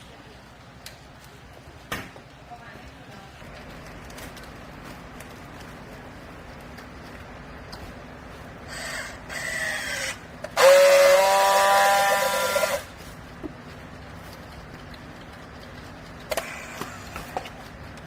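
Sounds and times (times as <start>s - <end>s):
baler machine whine with hiss: 8.7s - 13.0s.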